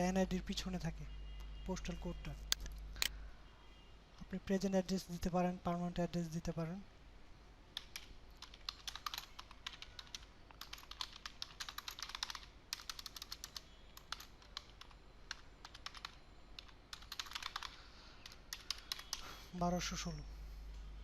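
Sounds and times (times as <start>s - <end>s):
computer keyboard typing: 7.7s - 19.3s.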